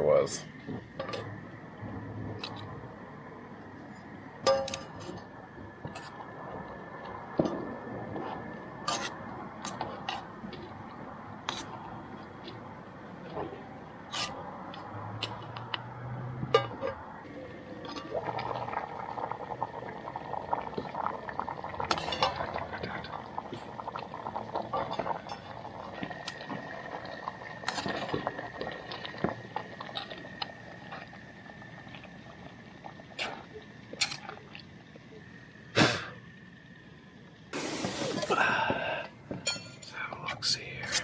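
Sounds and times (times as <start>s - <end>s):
liquid sounds: 16.6s - 34.6s
cookware clinking and scraping: 39.4s - 39.9s.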